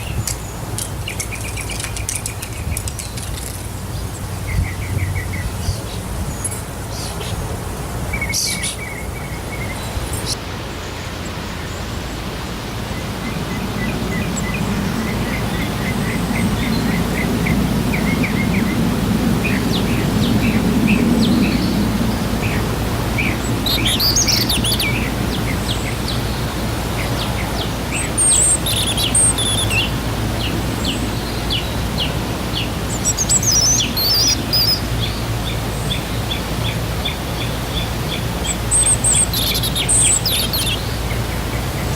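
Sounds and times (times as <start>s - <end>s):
waterfall rushing: 0.0s - 41.9s
young bird chirping: 28.2s - 29.9s, 33.0s - 34.8s.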